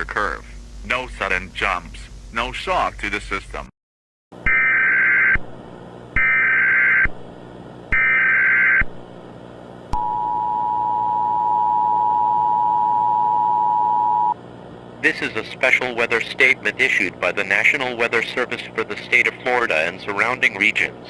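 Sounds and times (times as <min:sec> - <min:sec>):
two-tone attention signal: 0:10.0 - 0:14.4.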